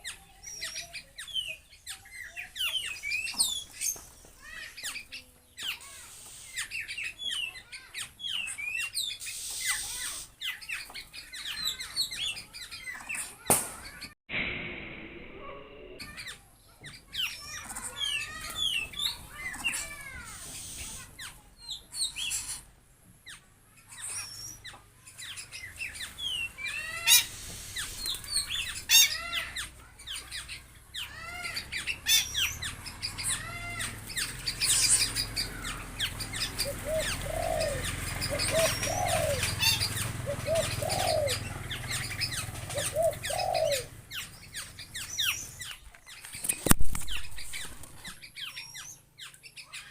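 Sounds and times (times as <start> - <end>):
low rumble: 14.3 - 16.3
low hooting calls: 14.7 - 16.6, 31.0 - 45.1
high bird chirps: 23.3 - 49.9.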